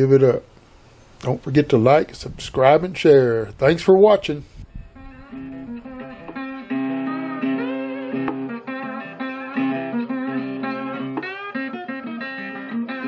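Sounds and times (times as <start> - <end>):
guitar music with bending notes: 4.7 - 13.0.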